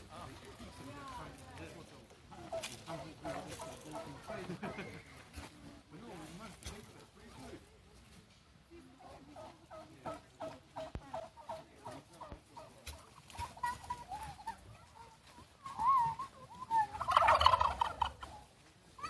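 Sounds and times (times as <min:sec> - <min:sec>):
turkeys clucking: 0:00.0 - 0:19.0
turkeys wavering calls: 0:02.1 - 0:05.8, 0:08.8 - 0:19.0
turkey rattling gobble: 0:02.3 - 0:05.0, 0:09.0 - 0:19.0.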